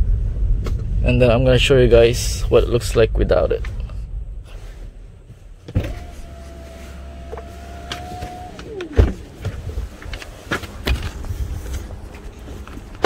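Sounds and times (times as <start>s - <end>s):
electric window motor whine: 5.8s - 10.0s
window thump: 7.9s - 9.6s.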